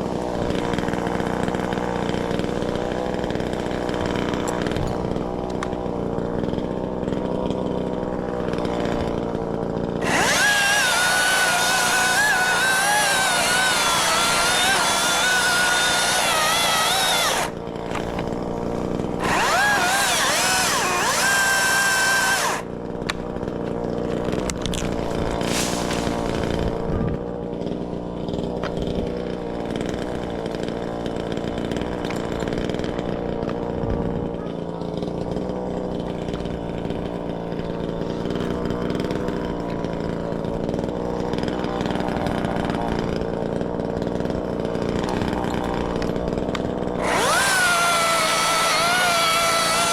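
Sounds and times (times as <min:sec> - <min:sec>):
chainsaw cutting wood: 0:00.0 - 0:49.9.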